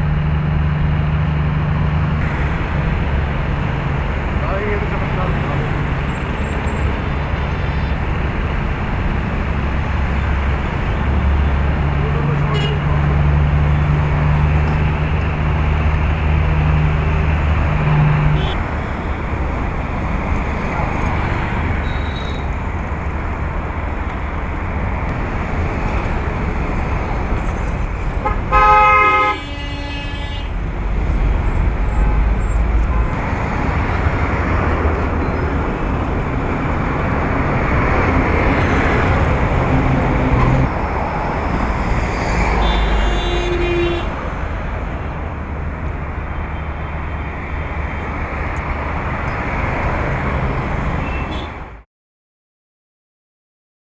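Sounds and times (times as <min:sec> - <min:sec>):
road traffic engines: 0:00.0 - 0:51.9
vehicle horn honking: 0:12.3 - 0:13.2, 0:18.3 - 0:18.7, 0:27.4 - 0:30.6, 0:31.5 - 0:33.2, 0:42.6 - 0:44.2, 0:51.0 - 0:51.8.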